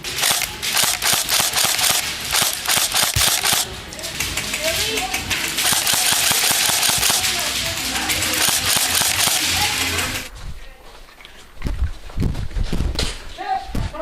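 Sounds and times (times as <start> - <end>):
airsoft guns firing bursts: 0.0 - 3.7, 5.5 - 10.3.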